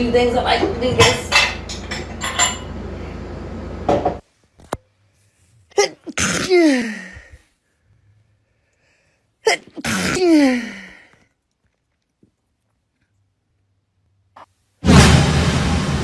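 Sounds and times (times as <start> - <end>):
woman sneezing: 5.7 - 7.1.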